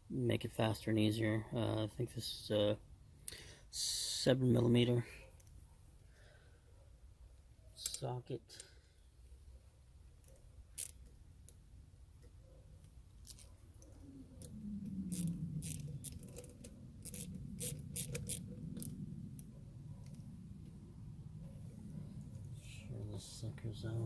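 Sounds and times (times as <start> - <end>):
ratchet clicking: 10.7 - 11.1, 13.2 - 13.5, 15.1 - 18.9
low hum: 11.2 - 24.0.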